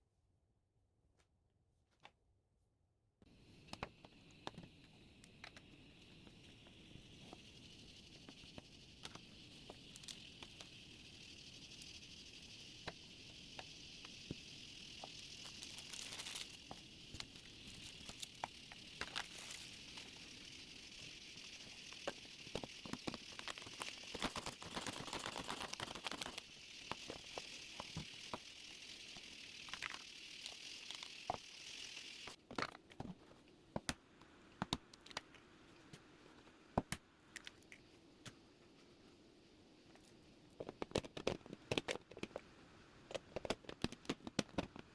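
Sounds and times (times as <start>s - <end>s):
steady high hiss: 3.2s - 32.4s
small clicks: 3.2s - 32.7s, 43.1s - 44.9s.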